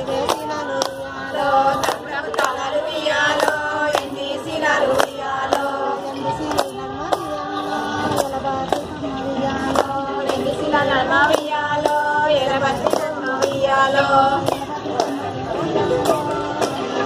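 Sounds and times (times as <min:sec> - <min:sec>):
hand claps: 0:00.0 - 0:01.0, 0:01.7 - 0:02.7, 0:03.3 - 0:04.2, 0:04.8 - 0:07.3, 0:09.7 - 0:10.6, 0:11.3 - 0:15.2
women singing in chorus: 0:00.0 - 0:17.0.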